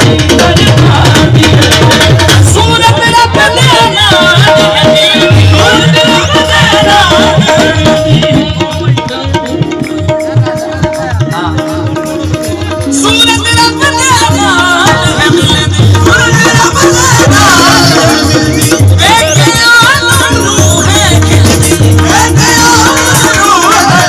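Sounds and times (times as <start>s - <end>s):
tabla drumming: 0.0s - 24.0s.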